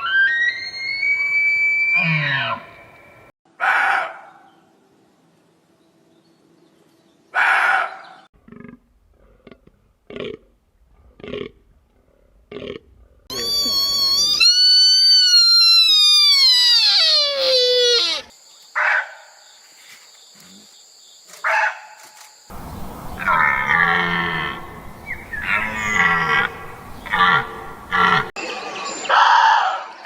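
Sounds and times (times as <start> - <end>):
deer calls: 13.3 - 18.3, 22.5 - 28.3.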